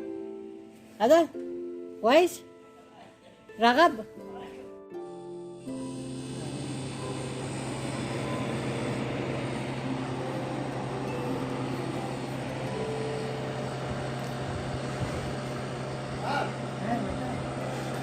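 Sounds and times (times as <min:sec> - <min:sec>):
freezer compressor humming: 0:04.9 - 0:18.0.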